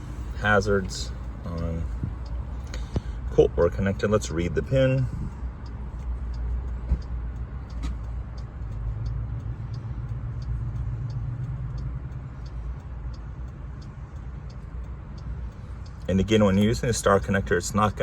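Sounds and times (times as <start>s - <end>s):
hazard-light flasher ticking: 4.3s - 18.0s.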